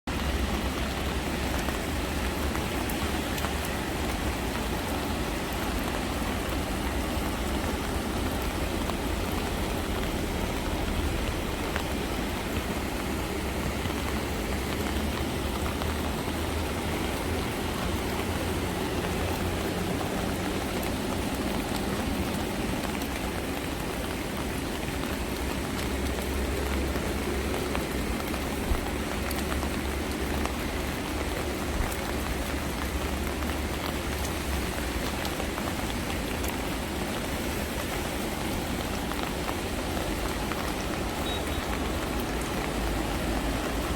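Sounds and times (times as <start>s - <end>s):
rain falling: 0.1s - 43.9s.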